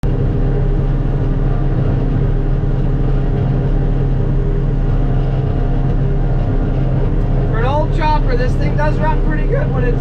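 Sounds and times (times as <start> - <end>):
large engine running steadily: 0.0 - 10.0.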